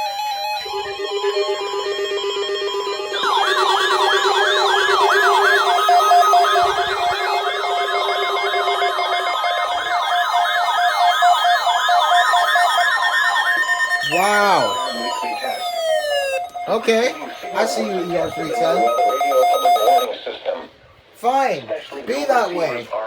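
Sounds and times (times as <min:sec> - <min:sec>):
electronic siren yelp: 0:00.0 - 0:20.1
siren warble: 0:00.0 - 0:20.1
steady siren tones: 0:00.0 - 0:20.1.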